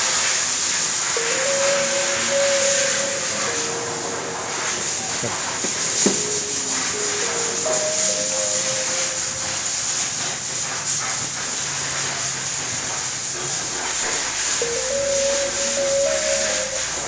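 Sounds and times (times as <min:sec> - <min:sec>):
slow melody of held notes: 0:00.0 - 0:10.4, 0:14.1 - 0:17.0
shaker-like hiss: 0:00.0 - 0:17.0.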